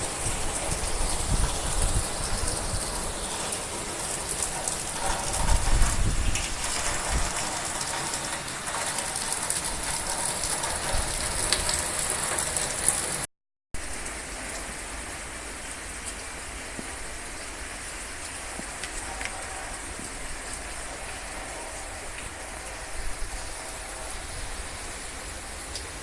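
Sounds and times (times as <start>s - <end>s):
heavy rain falling: 0.0s - 26.0s.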